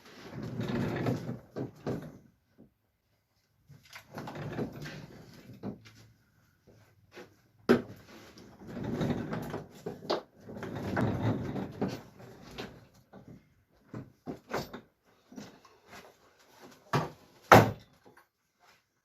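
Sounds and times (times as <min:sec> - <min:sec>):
sliding and rubbing: 0:08.0 - 0:13.0.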